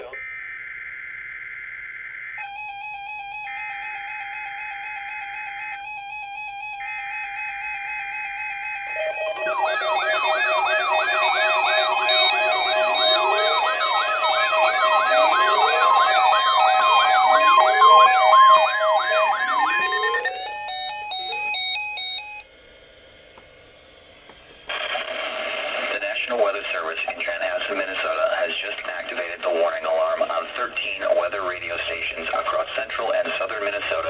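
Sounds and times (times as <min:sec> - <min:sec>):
electronic siren sweeps: 0:00.0 - 0:22.4
steady beeping tones: 0:02.4 - 0:22.4
synthesized announcer voice: 0:09.0 - 0:20.6, 0:25.9 - 0:34.0.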